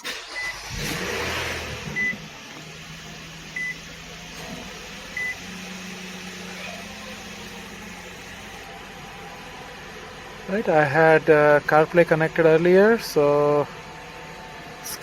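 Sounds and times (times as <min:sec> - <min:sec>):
car engine idling: 0:00.0 - 0:15.0
car warning chime beeping: 0:00.1 - 0:02.5, 0:03.4 - 0:04.0, 0:05.1 - 0:05.7.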